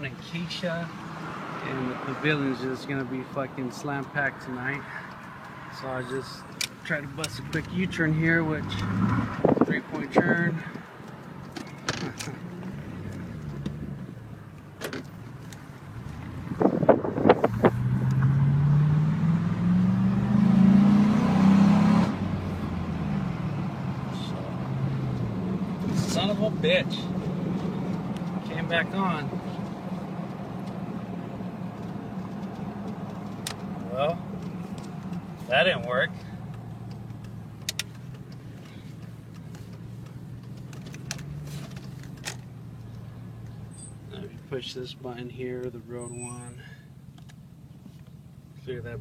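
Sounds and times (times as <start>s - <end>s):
truck engine accelerating: 15.1s - 44.4s.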